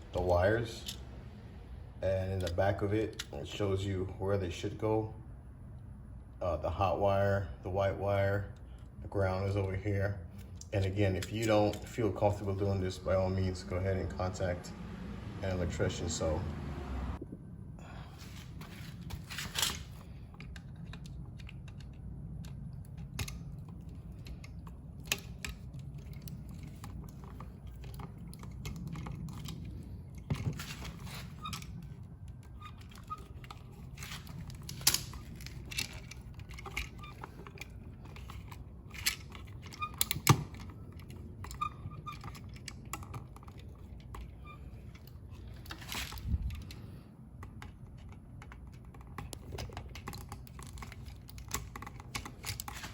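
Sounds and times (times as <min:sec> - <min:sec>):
clicks taps and rustles of wiring: 0:18.4 - 0:52.9.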